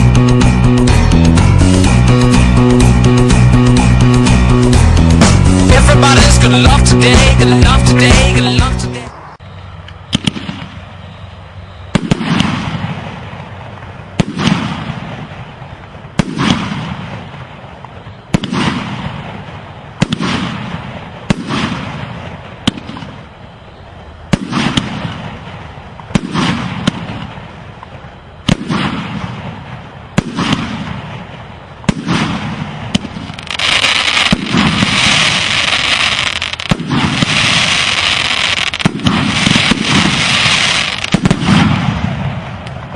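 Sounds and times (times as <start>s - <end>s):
fireworks bangs: 0.0s - 42.9s
fireworks crackling: 0.0s - 42.9s.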